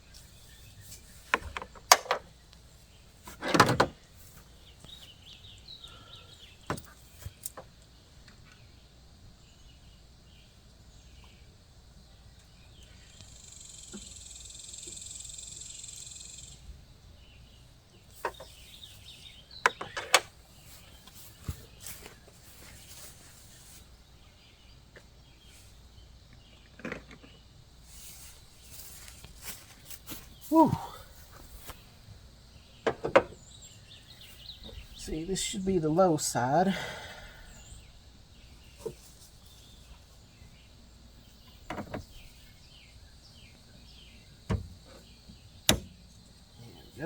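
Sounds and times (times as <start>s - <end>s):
faint outdoor background noise: 0.0s - 47.0s
hose coupler clicking onto port: 1.4s - 2.3s, 45.6s - 46.1s
bird chirping: 3.9s - 22.7s, 30.0s - 47.0s.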